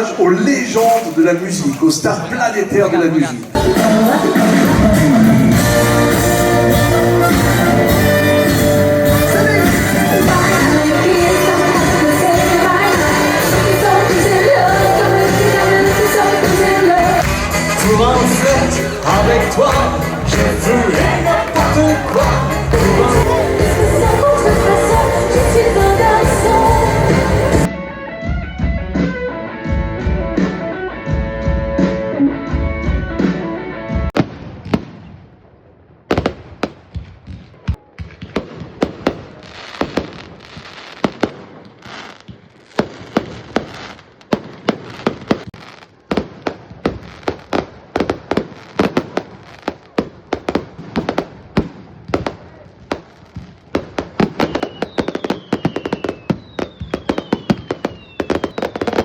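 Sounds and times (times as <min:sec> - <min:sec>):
fireworks bangs and crackles: 0:00.0 - 0:27.7, 0:34.1 - 0:59.0
music playing: 0:03.5 - 0:34.2
fireworks falling whistles: 0:37.0 - 0:59.0.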